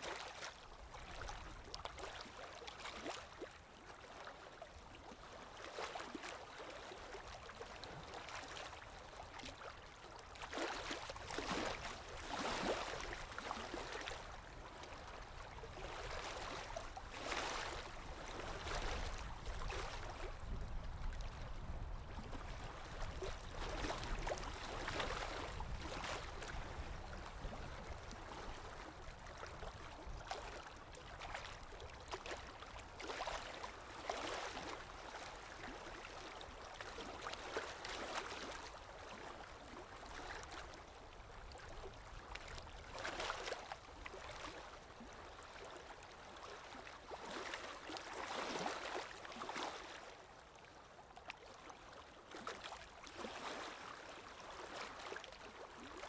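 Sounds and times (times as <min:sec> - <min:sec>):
stream water gurgling: 0:00.0 - 0:56.0.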